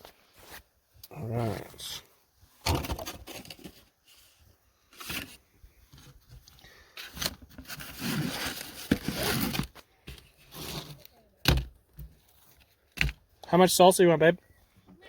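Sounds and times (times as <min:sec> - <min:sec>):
scraping and rustling: 0:02.7 - 0:11.1.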